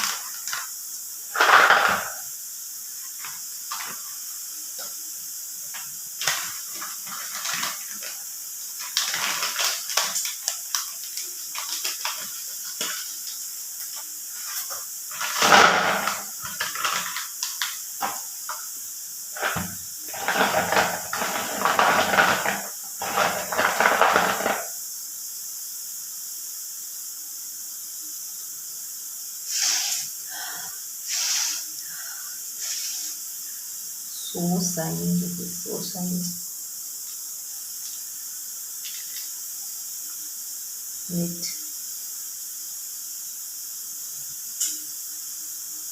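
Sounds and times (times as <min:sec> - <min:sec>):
packaging rustling and crinkling: 0:00.0 - 0:00.7, 0:03.2 - 0:04.1, 0:05.7 - 0:18.3, 0:19.4 - 0:24.7.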